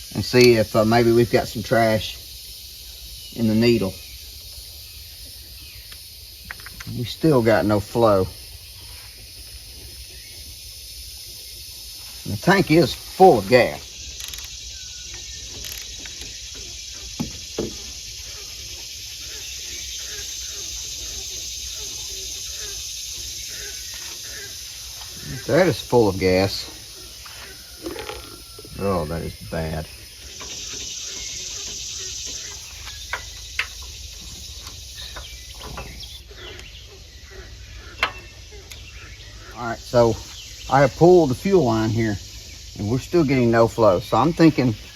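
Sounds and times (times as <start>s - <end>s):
insects chirping: 0.0s - 44.9s
steady background hiss: 0.0s - 44.9s
clicks and taps on fuel line: 14.2s - 18.0s, 30.2s - 36.8s, 37.9s - 38.8s
short knocks: 15.5s - 18.0s.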